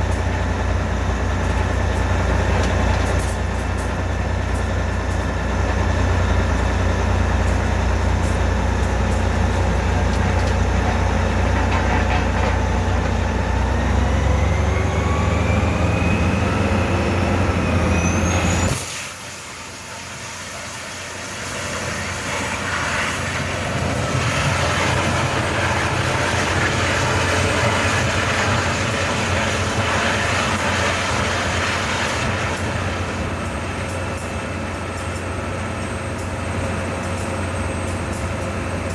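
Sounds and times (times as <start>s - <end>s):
drilling rig engine drone: 0.0s - 38.9s
rising machine whine: 13.3s - 19.0s, 21.3s - 38.9s
rough hissy machine noise: 18.0s - 38.9s.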